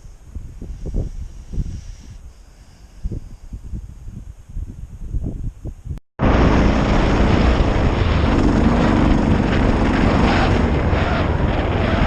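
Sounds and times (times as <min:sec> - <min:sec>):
wind and road noise: 0:00.0 - 0:12.0
motorcycle engine running: 0:06.2 - 0:12.0.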